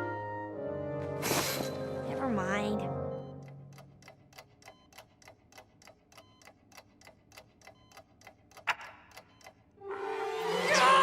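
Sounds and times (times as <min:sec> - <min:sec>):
clock ticking: 0:03.2 - 0:09.8.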